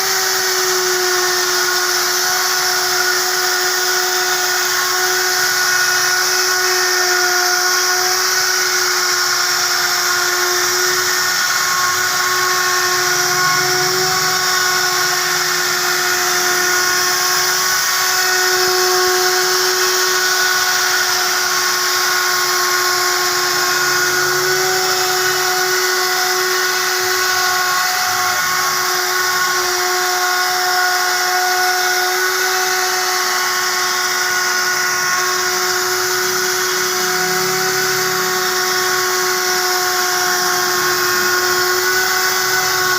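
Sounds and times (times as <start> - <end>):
router machine whining: 0.0 - 42.9.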